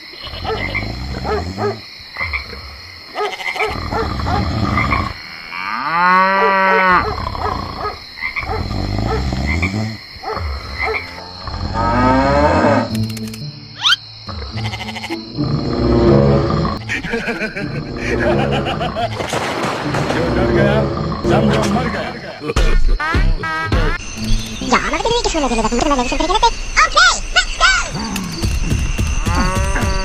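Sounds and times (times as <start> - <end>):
low animal croaks: 0.1 - 13.0, 13.8 - 16.9
cow-like moo: 3.8 - 7.8, 11.1 - 12.9.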